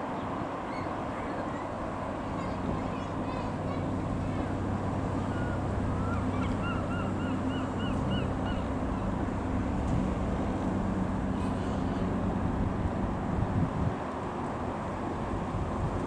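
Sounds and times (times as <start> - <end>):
low engine drone: 1.6 - 13.9, 14.7 - 16.0
wind noise: 1.6 - 14.0
bird calling short notes: 1.9 - 12.8.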